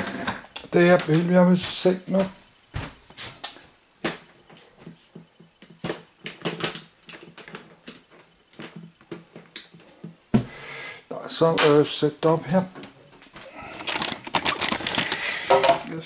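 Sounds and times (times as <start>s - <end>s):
objects being handled: 0.0s - 10.6s, 12.7s - 16.0s.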